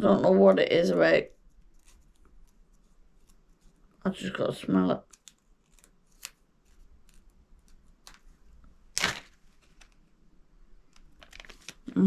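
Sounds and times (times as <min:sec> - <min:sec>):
rustling herb packet: 0:05.0 - 0:10.1, 0:11.0 - 0:11.9.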